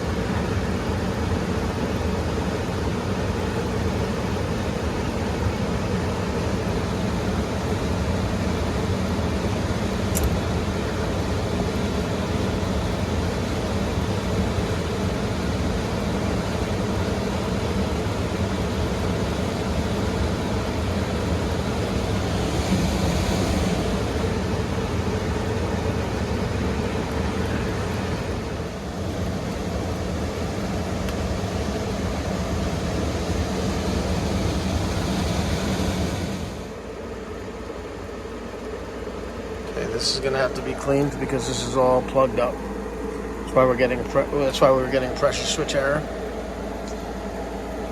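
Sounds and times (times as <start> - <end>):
motor humming: 3.0 - 47.9
hissy rush: 20.4 - 26.0, 30.6 - 36.7.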